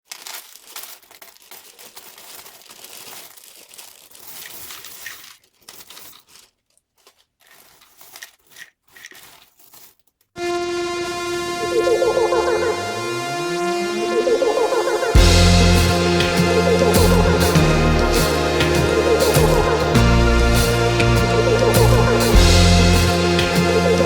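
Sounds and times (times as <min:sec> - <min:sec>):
plastic crinkling and rustling: 0:00.0 - 0:10.4
music: 0:10.4 - 0:24.0.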